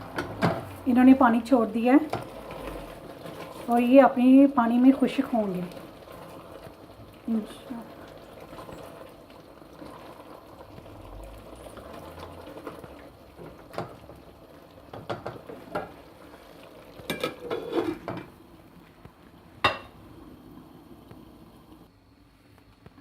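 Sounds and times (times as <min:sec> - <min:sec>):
curry bubbling in a pot: 0:00.0 - 0:21.9
utensils clinking against pot: 0:17.1 - 0:18.2.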